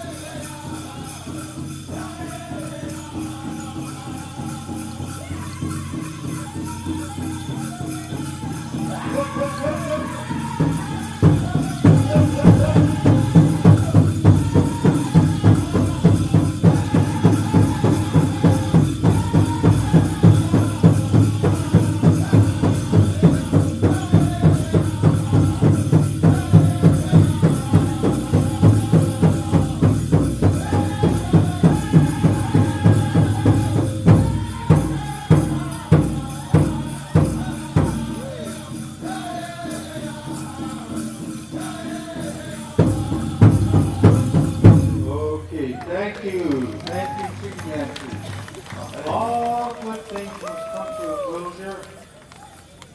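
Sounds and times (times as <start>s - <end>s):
drum group singing: 0.0s - 51.2s
bass drumbeat: 4.7s - 38.2s, 42.8s - 45.4s.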